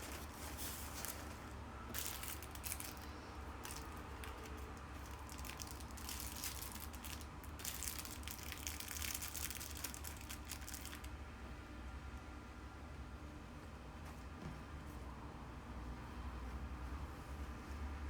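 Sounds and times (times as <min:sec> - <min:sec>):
wrapping material crinkling: 0:00.0 - 0:11.1.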